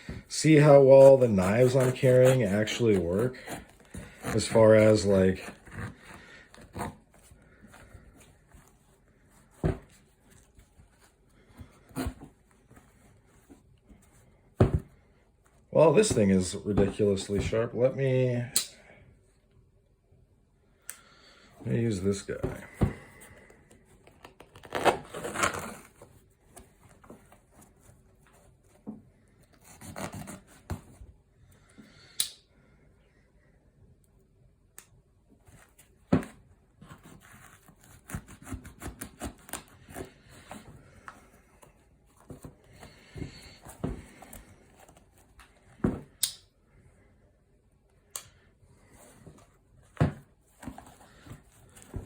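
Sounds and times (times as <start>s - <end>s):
knife cutting through shoe: 0.5s - 7.0s.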